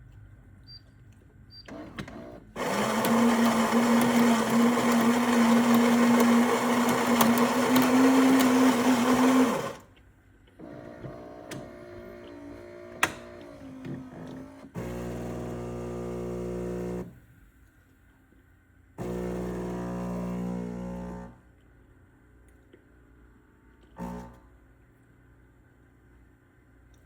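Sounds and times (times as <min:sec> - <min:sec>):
coffee grinder running: 0:02.6 - 0:09.9, 0:19.0 - 0:21.3
motor whir: 0:02.6 - 0:09.9.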